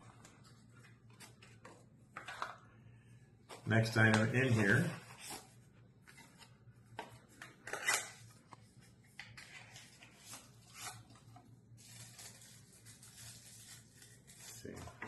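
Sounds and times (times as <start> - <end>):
packaging rustles and scrapes: 7.8 - 15.0.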